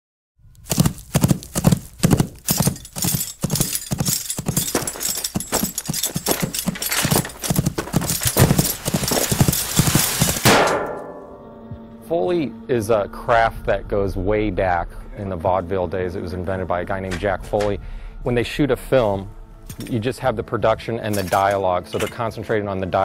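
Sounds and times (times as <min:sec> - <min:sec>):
horse hooves clip-clopping: 0:00.6 - 0:10.6.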